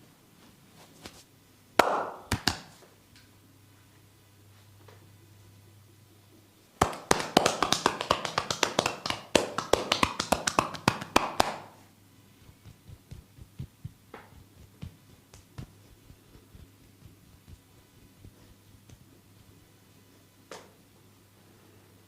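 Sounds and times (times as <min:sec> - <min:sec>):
hands tapping and slapping body: 0:01.8 - 0:02.8, 0:06.8 - 0:11.7, 0:12.4 - 0:19.2.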